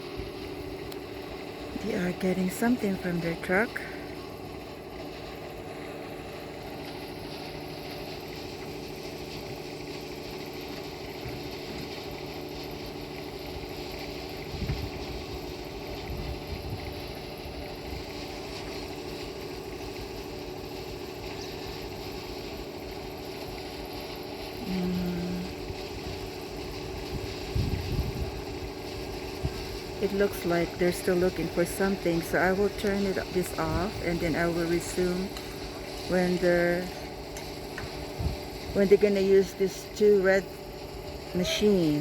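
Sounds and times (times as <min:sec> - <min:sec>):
machine humming: 0:00.0 - 0:42.0.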